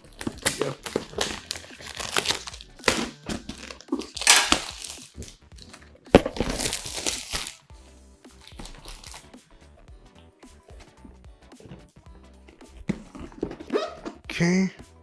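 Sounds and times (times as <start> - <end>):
cardboard packaging crinkling: 0.0 - 7.7, 8.4 - 9.2.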